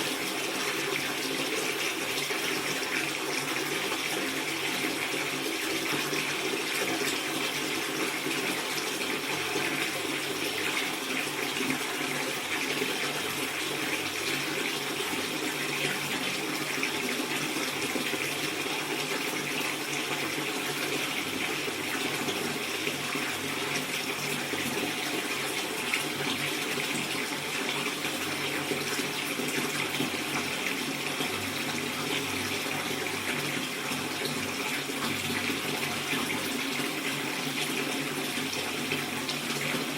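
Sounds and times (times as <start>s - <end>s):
tap water filling bathtub: 0.0s - 39.9s.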